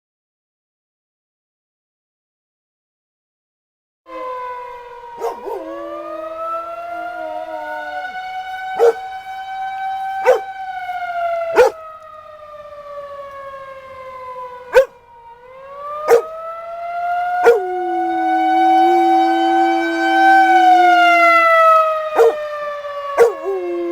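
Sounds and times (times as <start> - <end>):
warning siren gliding in pitch: 4.1 - 23.9
dog barking: 5.2 - 5.8, 8.8 - 9.1, 10.2 - 10.5, 11.5 - 11.8, 14.7 - 14.9, 16.1 - 16.3, 17.4 - 17.7, 22.2 - 22.4, 23.2 - 23.7.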